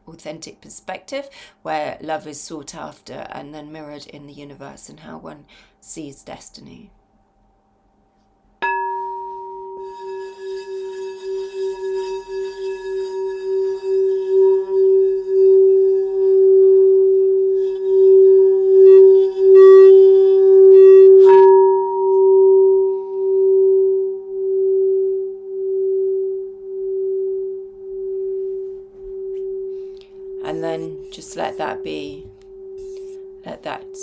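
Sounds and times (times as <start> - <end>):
singing bowl ringing: 8.6 - 34.0.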